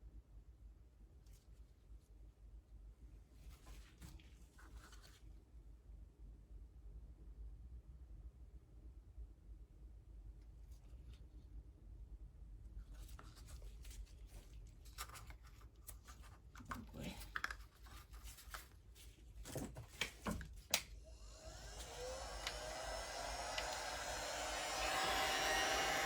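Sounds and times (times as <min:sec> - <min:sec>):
electric blower whining: 0:21.0 - 0:26.0.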